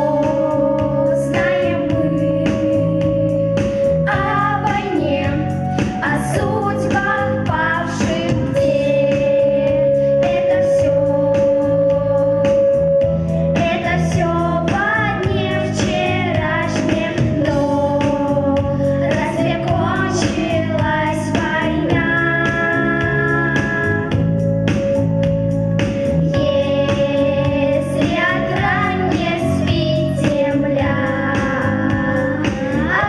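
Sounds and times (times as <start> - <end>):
instrumental accompaniment: 0.0 - 33.0.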